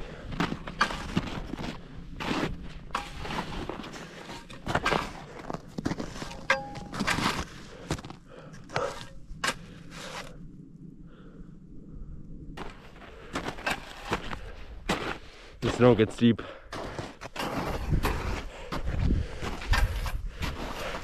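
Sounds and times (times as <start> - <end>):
footsteps crunching in snow: 12.6 - 21.0.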